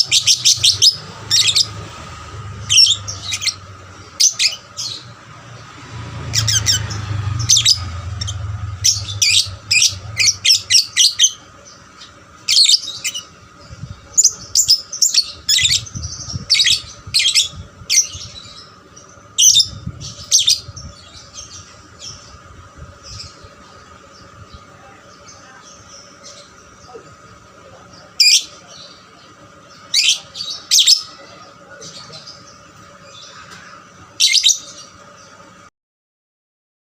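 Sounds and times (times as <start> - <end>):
lovebird chirping: 0.0 - 5.2, 5.9 - 27.0
low rumble: 5.0 - 11.0, 15.4 - 24.8.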